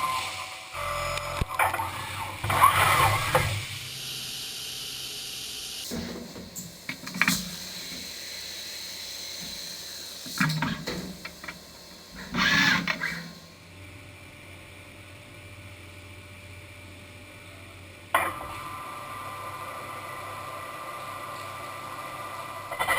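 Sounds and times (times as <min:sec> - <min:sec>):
high machine whine: 0:00.0 - 0:22.9
machine hum: 0:03.2 - 0:17.9
cutting and clanking bursts: 0:05.9 - 0:13.6.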